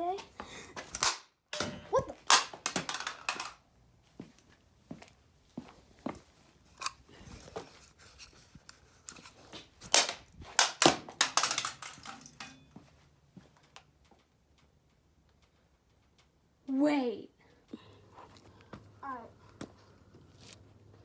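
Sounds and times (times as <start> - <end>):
computer mouse being smashed: 0.9 - 3.6, 9.9 - 12.5.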